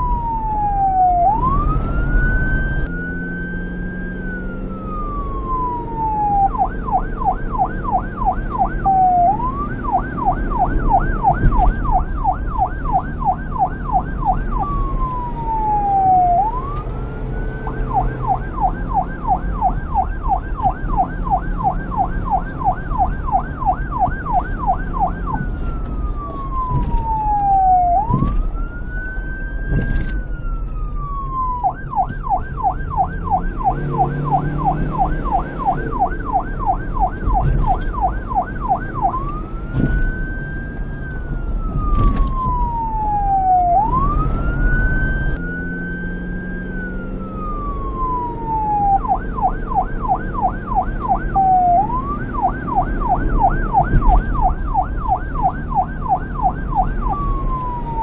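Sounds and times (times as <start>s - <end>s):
electronic police siren: 0.0s - 58.0s.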